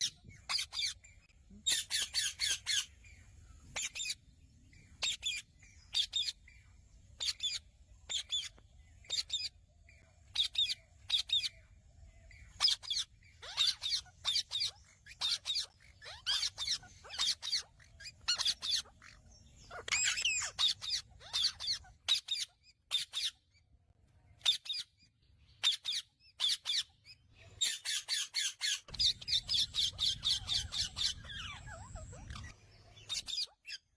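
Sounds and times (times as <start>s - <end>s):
parakeet screeching: 0.0s - 3.0s, 3.7s - 4.2s, 5.0s - 6.4s, 7.2s - 8.5s, 9.1s - 9.5s, 10.2s - 11.6s, 12.4s - 23.4s, 27.6s - 33.9s.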